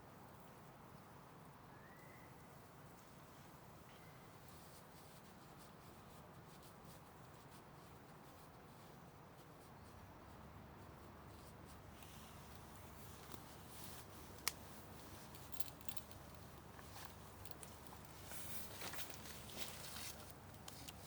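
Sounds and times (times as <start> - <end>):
faint steady hiss: 0.0 - 21.0
rustling and handling noise: 4.4 - 21.0.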